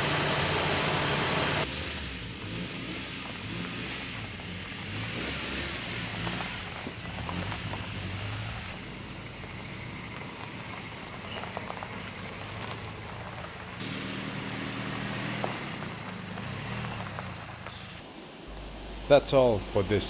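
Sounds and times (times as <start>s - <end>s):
engine running: 0.0s - 20.0s
rushing noise: 17.7s - 20.0s.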